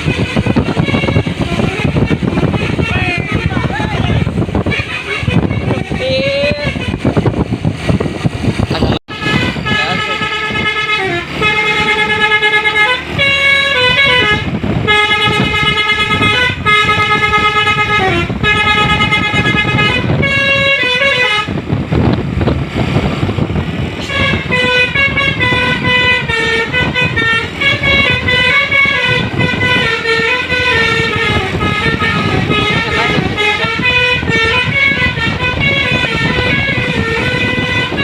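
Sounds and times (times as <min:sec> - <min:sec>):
musical air horn melody: 0:00.0 - 0:07.2, 0:09.1 - 0:21.6, 0:24.0 - 0:38.0
rush of noise: 0:00.0 - 0:10.2.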